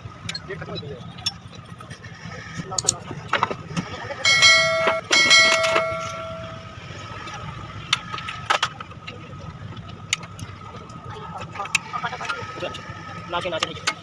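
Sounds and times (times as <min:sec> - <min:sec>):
metal tools clinking: 0:04.3 - 0:06.6
metal part struck ringing: 0:04.3 - 0:06.8.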